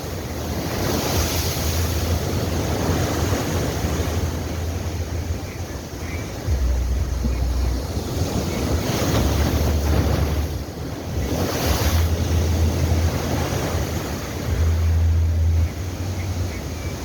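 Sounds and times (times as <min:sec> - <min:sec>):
ocean waves breaking: 0:00.0 - 0:17.0.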